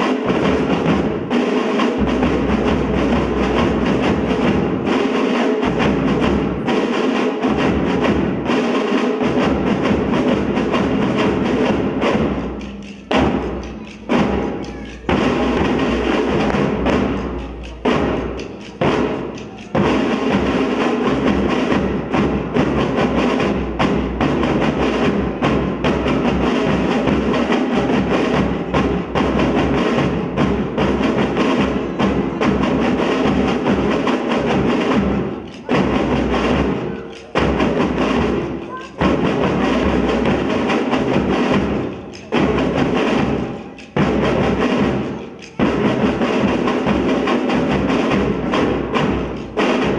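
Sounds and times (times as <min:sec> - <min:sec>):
drums beating: 0:00.0 - 0:49.9.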